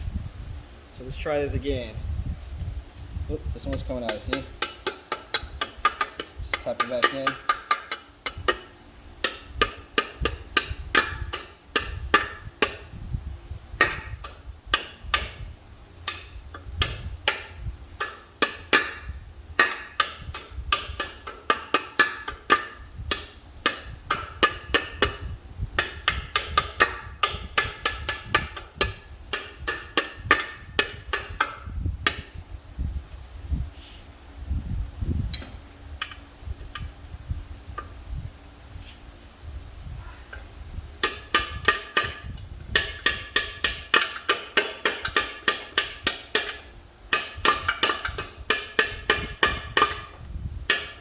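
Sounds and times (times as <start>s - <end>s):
hammer tapping metal bearing: 3.6s - 13.0s, 13.8s - 32.4s, 41.0s - 51.0s.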